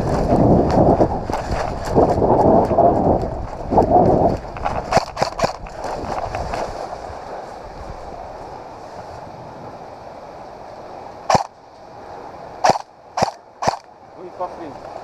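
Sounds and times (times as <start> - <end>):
quick footfalls on ground: 0.0 - 7.0
steady rushing noise: 0.0 - 15.0
sharp crack: 4.6 - 6.6, 11.3 - 11.6, 12.6 - 13.9.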